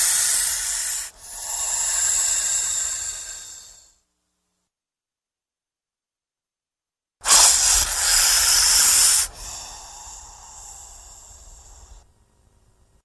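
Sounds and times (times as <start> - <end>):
snake hissing: 0.0 - 3.9, 7.2 - 12.8.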